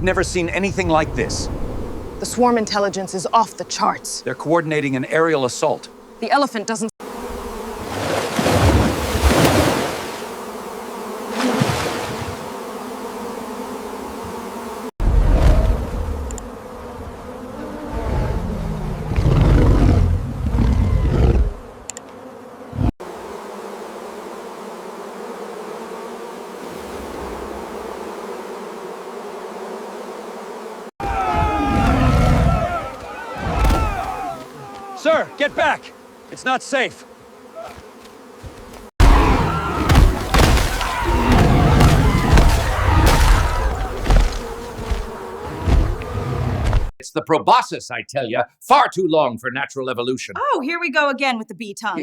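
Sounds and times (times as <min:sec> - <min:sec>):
bee swarm buzzing: 0:00.0 - 0:47.0
deep roar: 0:31.0 - 0:34.3
heavy thuds and crashes: 0:31.0 - 0:34.4, 0:38.6 - 0:46.9.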